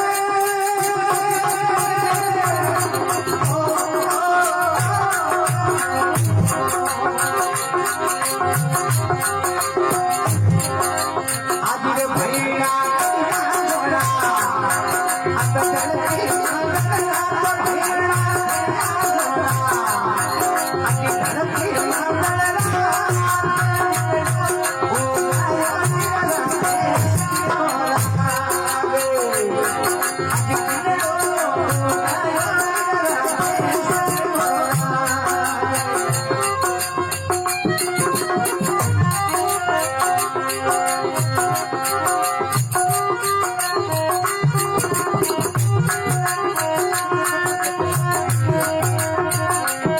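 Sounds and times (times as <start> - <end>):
hand drum: 0.0 - 49.9
hand drum beat: 33.3 - 49.9.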